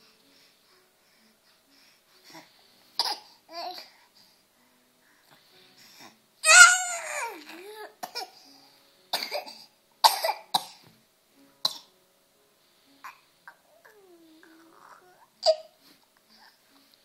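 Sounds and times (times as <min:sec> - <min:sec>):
child coughing: 0:09.2 - 0:10.8.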